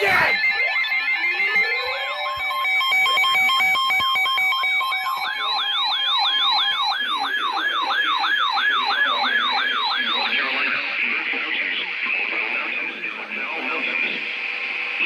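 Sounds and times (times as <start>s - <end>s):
siren-like electronic yelp: 0.0s - 11.0s
alternating electronic beeps: 0.0s - 11.4s.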